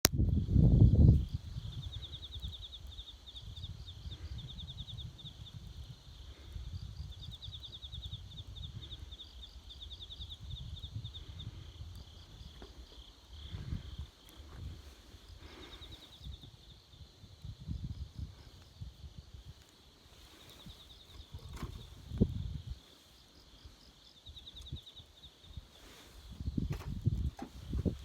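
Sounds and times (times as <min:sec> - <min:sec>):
insects chirping in trills: 0:00.2 - 0:28.0.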